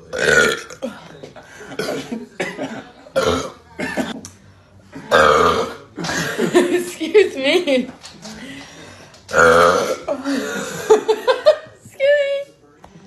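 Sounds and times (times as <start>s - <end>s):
woman burping: 0.1s - 1.0s, 1.8s - 4.2s, 5.1s - 6.3s, 9.3s - 10.7s.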